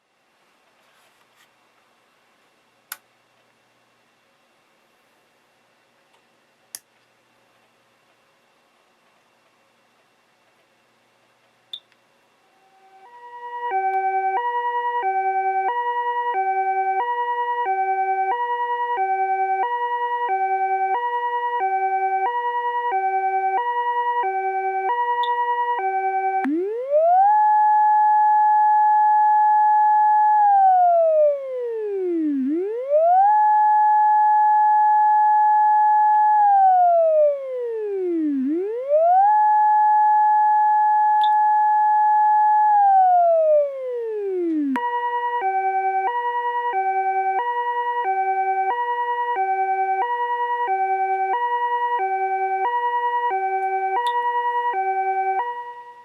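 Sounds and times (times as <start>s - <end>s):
synthesized siren wail: 12.5s - 55.8s
two-tone hi-lo siren: 12.5s - 56.0s.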